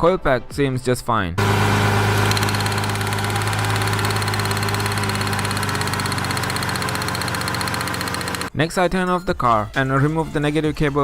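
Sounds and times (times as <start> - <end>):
car engine idling misfiring: 1.4 - 8.5.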